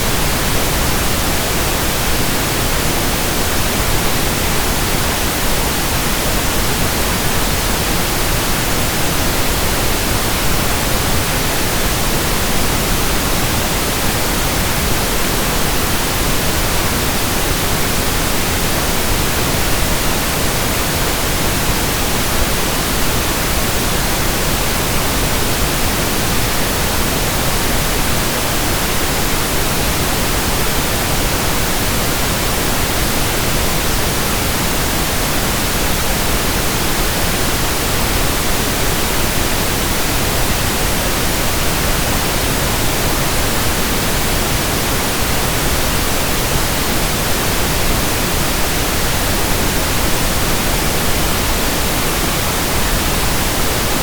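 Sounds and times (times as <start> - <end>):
steady pink noise hiss: 0.0 - 54.0.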